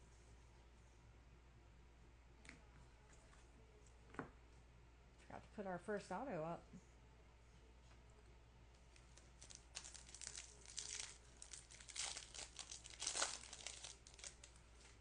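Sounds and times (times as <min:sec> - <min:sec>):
wrapper crinkling and tearing: 0:08.9 - 0:15.0.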